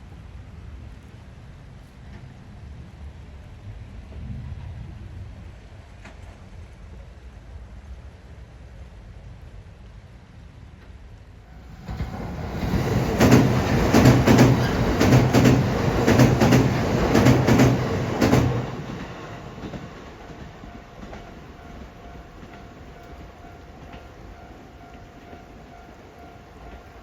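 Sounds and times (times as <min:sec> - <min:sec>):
wheels clattering over rail joints: 0:11.8 - 0:24.1.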